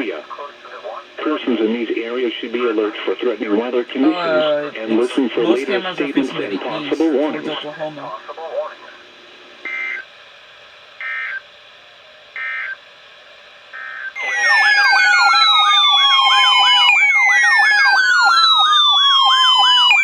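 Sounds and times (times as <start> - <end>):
digital data bursts: 9.7 - 10.0, 11.0 - 11.4, 12.4 - 12.8, 13.7 - 20.0
electronic siren alert tone: 9.7 - 10.0, 11.0 - 11.4, 12.4 - 12.8, 13.7 - 20.0.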